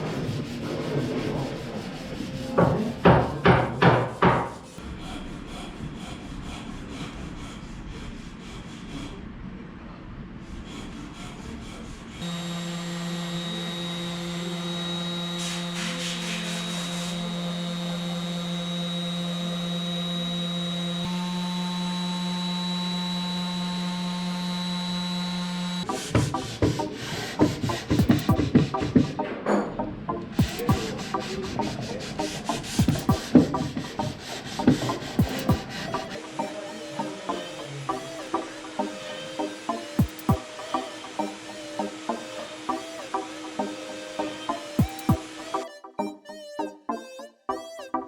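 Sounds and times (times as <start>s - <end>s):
tool rubbing wood: 0.0s - 5.7s, 12.2s - 29.6s, 30.2s - 45.6s
power tool motor humming: 12.2s - 29.1s, 30.4s - 45.7s.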